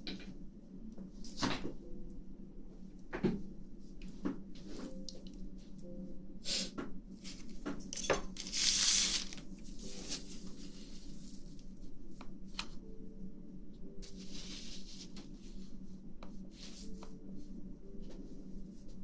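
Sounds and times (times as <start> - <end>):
short hissing burst: 8.4 - 9.3.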